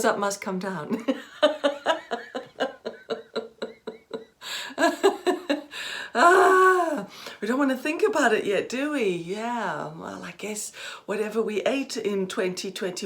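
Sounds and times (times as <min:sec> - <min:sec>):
woman laughing: 0:00.9 - 0:07.0.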